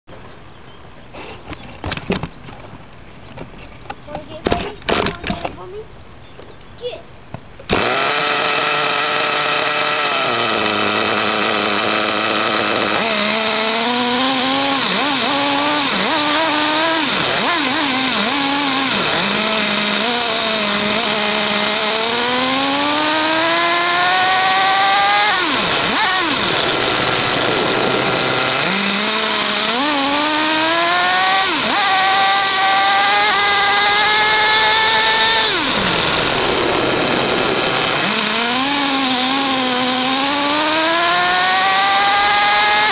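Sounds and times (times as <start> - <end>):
small nitro engine revving: 7.6 - 42.9.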